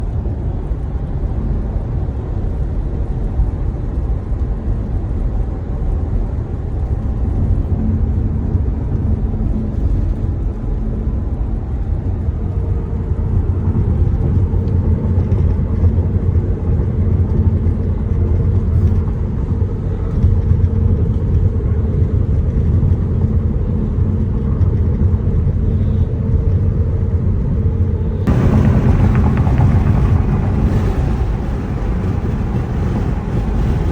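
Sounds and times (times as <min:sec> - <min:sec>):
road and tyre rumble: 0:00.0 - 0:33.9
faint hum: 0:25.4 - 0:33.9.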